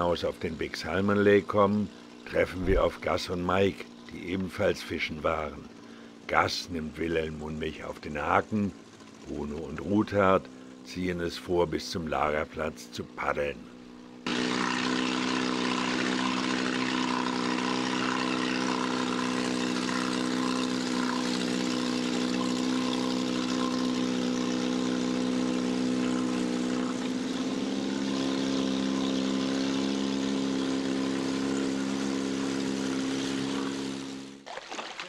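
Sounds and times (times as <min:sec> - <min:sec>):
motorboat engine running: 0:00.0 - 0:35.0.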